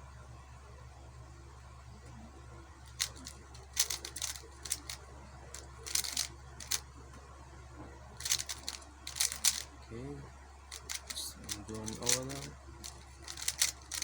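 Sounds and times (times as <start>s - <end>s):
puzzle cube plastic clicks: 2.9s - 6.8s, 8.2s - 9.7s, 10.7s - 14.0s.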